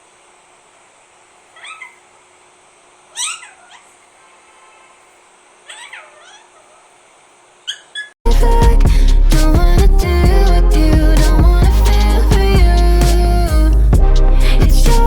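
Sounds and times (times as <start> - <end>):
parakeet squawking calls: 1.6 - 2.1, 3.1 - 4.0, 5.7 - 6.9, 7.6 - 8.2.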